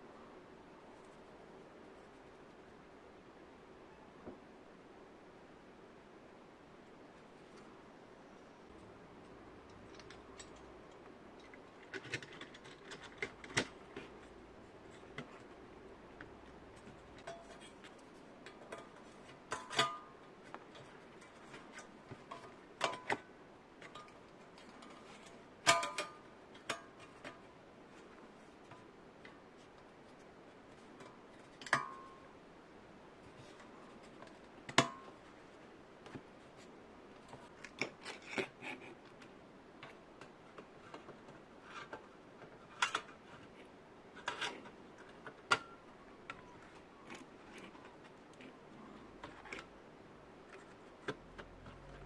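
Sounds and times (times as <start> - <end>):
faint steady hum: 0.0 - 52.0
small hard parts clicking: 9.6 - 14.1.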